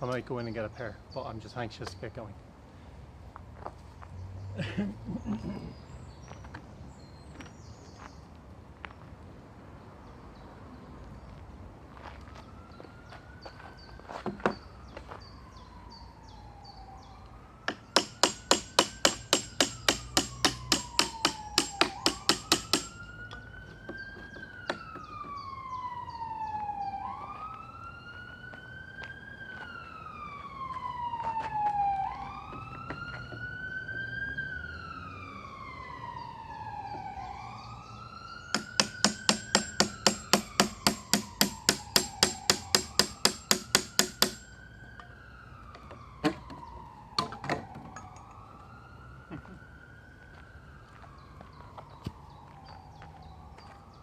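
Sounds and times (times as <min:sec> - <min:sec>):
emergency siren wailing: 0:12.3 - 0:14.0, 0:15.3 - 0:17.8, 0:22.9 - 0:38.6, 0:44.4 - 0:54.0
hammer blows on wood: 0:17.7 - 0:23.1, 0:38.6 - 0:44.5.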